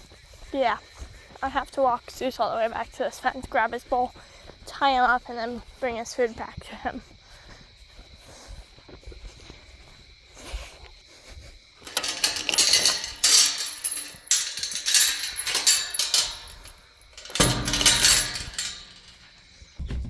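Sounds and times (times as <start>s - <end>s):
metal clinking and rattling: 11.8s - 19.8s.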